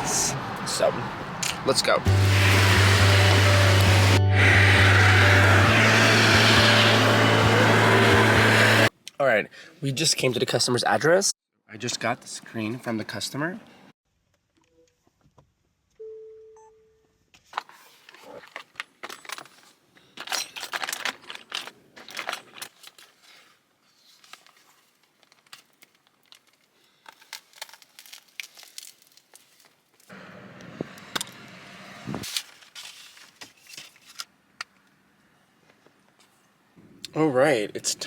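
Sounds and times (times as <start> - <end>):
short beep: 16.0 - 17.0
plastic crinkling: 20.6 - 30.1.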